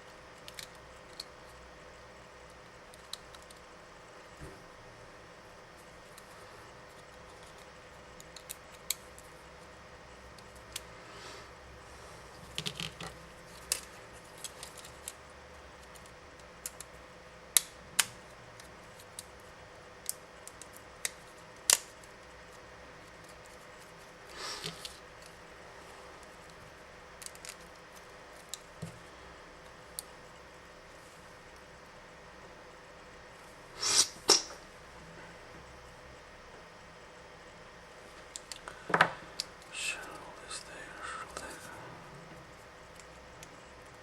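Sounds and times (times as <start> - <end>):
small parts clicking and tapping: 0.4 - 1.4, 2.9 - 3.6, 12.4 - 15.2, 15.8 - 19.4, 20.0 - 24.0, 27.2 - 29.0.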